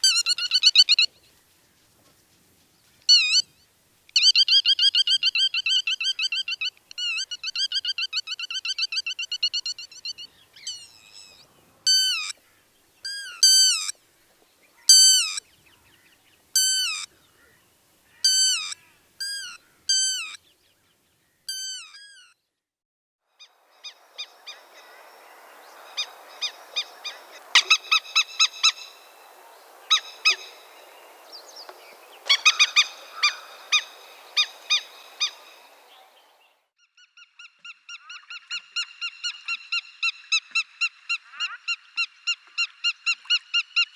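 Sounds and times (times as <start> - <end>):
flock of birds calling: 0.0 - 1.1, 4.2 - 14.0, 14.6 - 20.4, 23.8 - 36.5.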